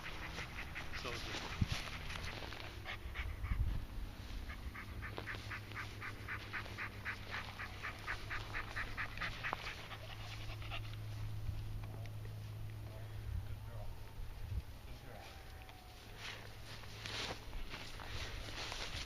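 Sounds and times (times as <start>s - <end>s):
dog panting: 0.0s - 11.3s
low steady hum: 0.0s - 19.0s.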